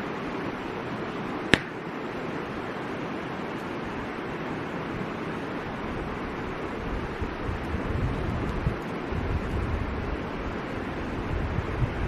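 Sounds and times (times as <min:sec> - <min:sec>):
river rushing: 0:00.1 - 0:06.5
wind rumbling on microphone: 0:04.9 - 0:12.0.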